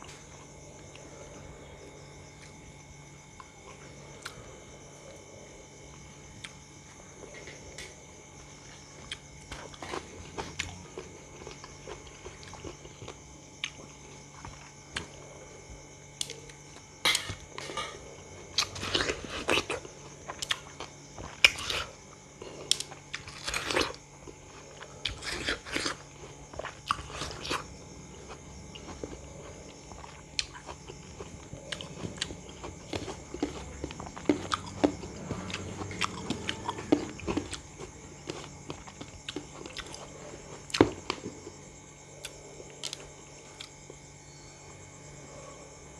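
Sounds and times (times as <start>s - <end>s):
person chewing crisp fruit: 0.0s - 44.1s.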